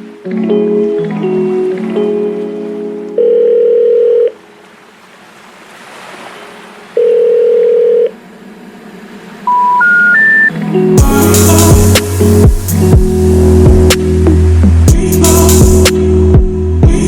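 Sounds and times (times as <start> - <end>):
telephone ringback tone: 3.2 - 4.4, 7.0 - 8.1, 9.5 - 10.5
rising three-tone beeps: 9.5 - 10.5.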